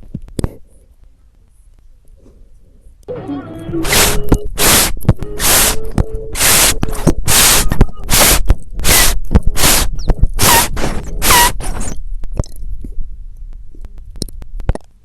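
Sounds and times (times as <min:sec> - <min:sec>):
short pitched chirps: 0:03.1 - 0:11.5
harsh hissing bursts: 0:03.8 - 0:11.9.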